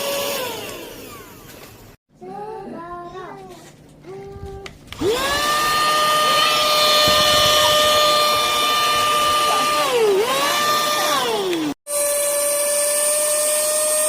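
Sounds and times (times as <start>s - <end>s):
small vacuum motor whining: 0.0s - 1.8s, 4.9s - 14.0s.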